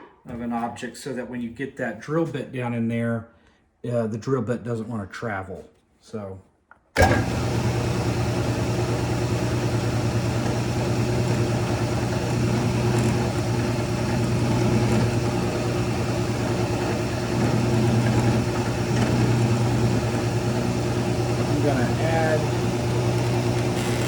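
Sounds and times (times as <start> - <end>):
drill press motor humming: 7.0 - 24.0.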